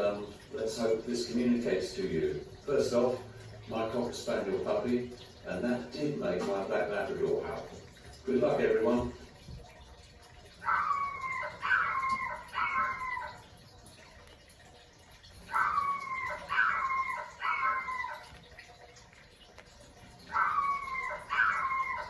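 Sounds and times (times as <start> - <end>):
puppy howling: 10.6 - 13.5, 15.4 - 18.5, 20.2 - 22.0.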